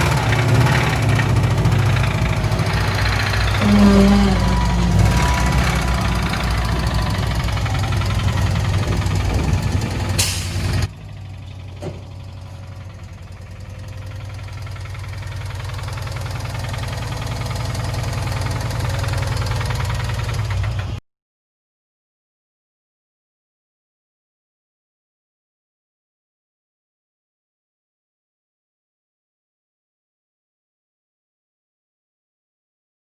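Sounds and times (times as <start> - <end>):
vehicle engine rumbling: 0.0 - 21.0.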